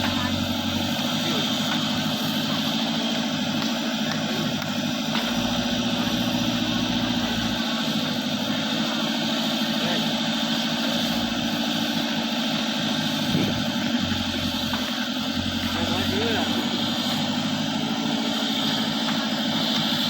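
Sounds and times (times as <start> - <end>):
diesel engine running: 0.0 - 20.0.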